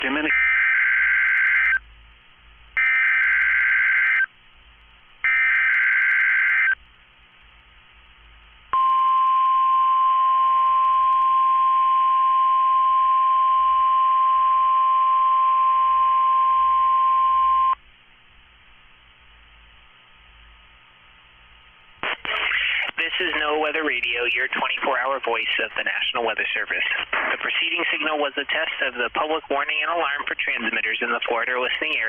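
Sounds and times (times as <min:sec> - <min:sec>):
steady warning alarm tone: 0:00.3 - 0:01.8, 0:02.8 - 0:04.3, 0:05.2 - 0:06.8
buzzy digital data tones: 0:02.8 - 0:04.3, 0:05.3 - 0:06.8.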